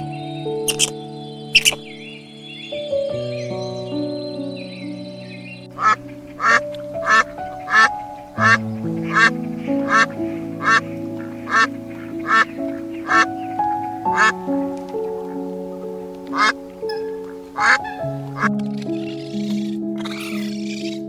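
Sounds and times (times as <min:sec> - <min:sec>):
gentle piano music: 0:00.0 - 0:21.0
animal giving short calls: 0:17.6 - 0:18.5.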